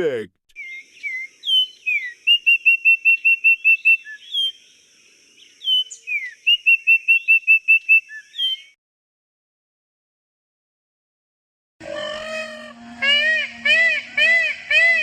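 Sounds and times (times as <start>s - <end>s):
songbird singing whistled notes: 0.5s - 4.8s, 5.4s - 8.8s.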